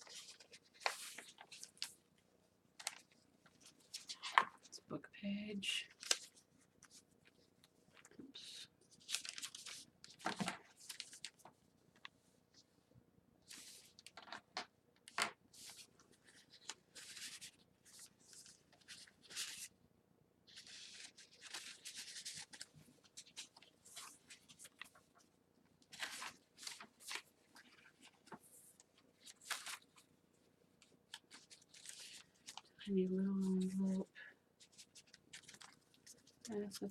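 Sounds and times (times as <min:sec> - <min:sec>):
paper pages rustling: 0:00.0 - 0:02.2, 0:02.8 - 0:04.7, 0:05.9 - 0:12.7, 0:13.4 - 0:19.7, 0:20.5 - 0:32.8, 0:34.6 - 0:36.9.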